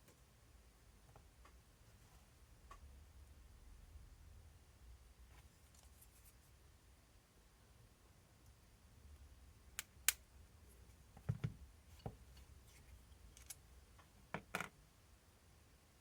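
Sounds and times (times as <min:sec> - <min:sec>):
small parts clicking and tapping: 0:13.3 - 0:13.6.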